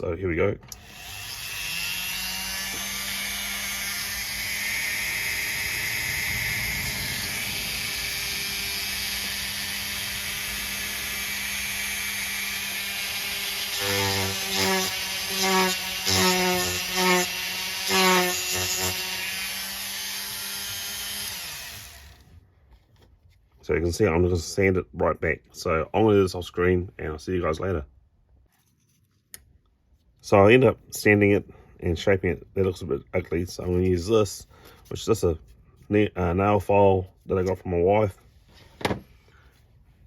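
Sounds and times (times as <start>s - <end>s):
rotary tool whining: 0.7s - 22.4s.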